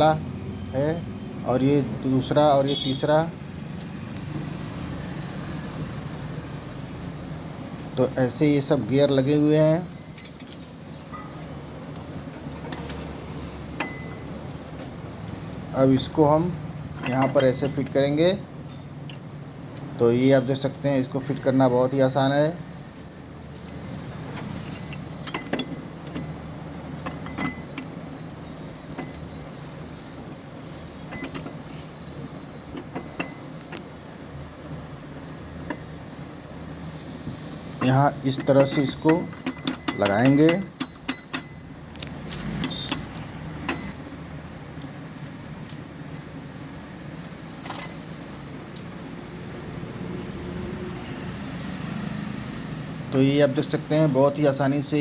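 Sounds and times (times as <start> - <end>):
metal gears clinking: 9.9 - 11.7, 16.0 - 19.3, 23.8 - 34.0, 37.6 - 44.0.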